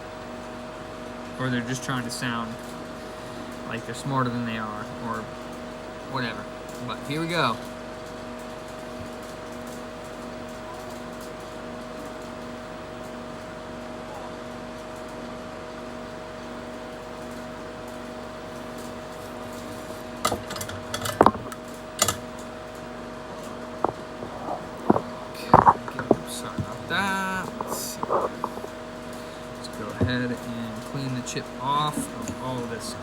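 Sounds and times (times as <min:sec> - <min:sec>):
fume extractor fan humming: 0:00.0 - 0:33.0
sharp clicks and knocks: 0:19.6 - 0:22.3, 0:23.4 - 0:28.8.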